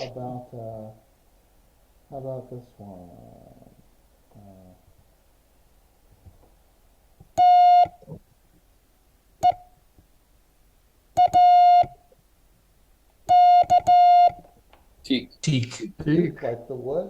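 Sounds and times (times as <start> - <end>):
morse code beeps: 7.4 - 8.0, 9.4 - 9.7, 11.2 - 12.0, 13.3 - 14.4.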